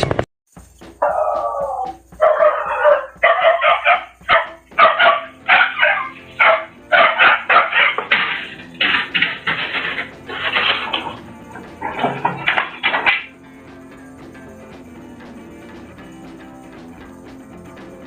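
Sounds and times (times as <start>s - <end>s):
dog barking: 1.0s - 9.4s.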